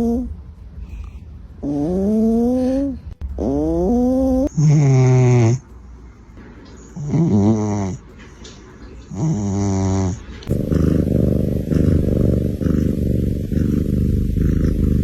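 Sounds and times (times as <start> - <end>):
cat snoring: 0.0 - 0.3, 1.6 - 5.6, 7.0 - 8.0, 9.1 - 15.0
low pulsing rumble: 10.5 - 15.0.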